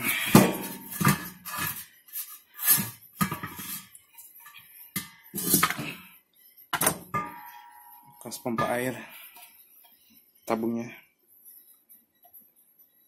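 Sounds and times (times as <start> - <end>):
metallic ringing: 7.0 - 9.6.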